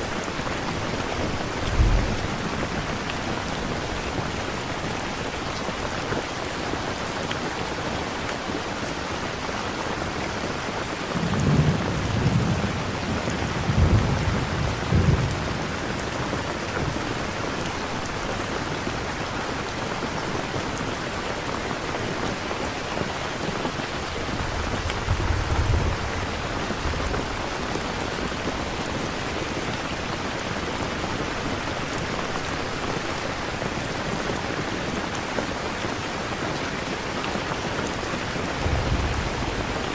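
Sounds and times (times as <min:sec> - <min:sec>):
steady rain falling: 0:00.0 - 0:39.9
thunder rumbling: 0:00.8 - 0:03.4, 0:24.3 - 0:27.6, 0:38.6 - 0:39.9.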